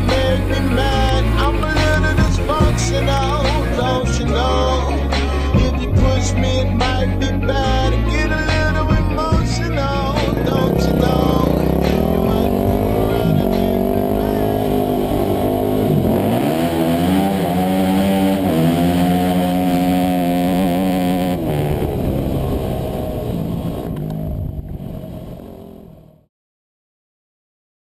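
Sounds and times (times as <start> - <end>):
dirt bike engine running hard: 0.0 - 26.2.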